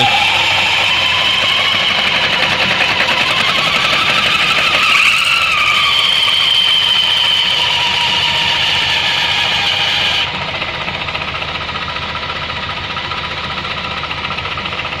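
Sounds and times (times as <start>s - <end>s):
high whistle: 0.0s - 10.3s
scooter engine running: 0.0s - 15.0s.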